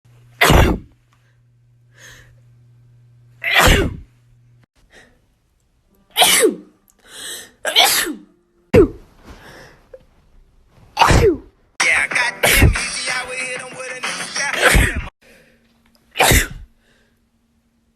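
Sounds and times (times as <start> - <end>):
person sneezing: 0.4 - 0.9, 3.4 - 4.1, 6.2 - 6.7, 7.6 - 9.1, 10.9 - 11.5, 12.4 - 12.8, 14.6 - 15.1, 16.1 - 16.7
quick in-breath: 1.2 - 2.4, 7.0 - 7.6, 9.2 - 9.9.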